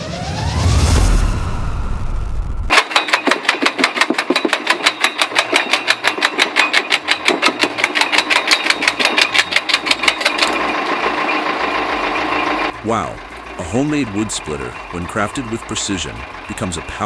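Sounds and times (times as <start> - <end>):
wood splitter mechanical clatter: 2.7 - 17.0.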